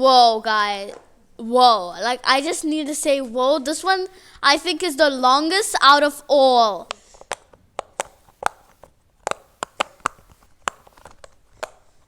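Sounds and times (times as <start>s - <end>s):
fidget toy bubbles popping: 6.8s - 11.8s.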